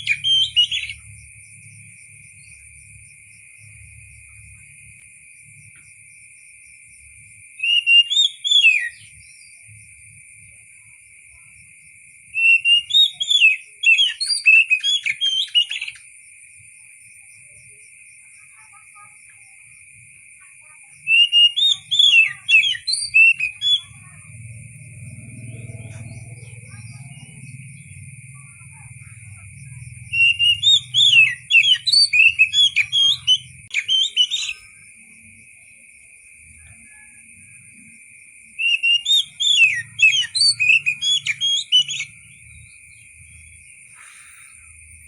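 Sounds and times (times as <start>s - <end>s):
bird singing whistled notes: 0.0s - 1.2s, 7.6s - 9.8s, 12.3s - 16.1s, 20.9s - 34.9s, 38.5s - 45.0s.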